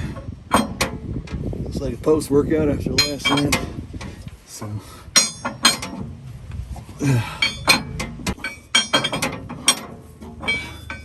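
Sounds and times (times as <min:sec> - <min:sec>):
metal tools clinking: 0:02.9 - 0:03.8, 0:05.1 - 0:06.1, 0:07.2 - 0:11.0.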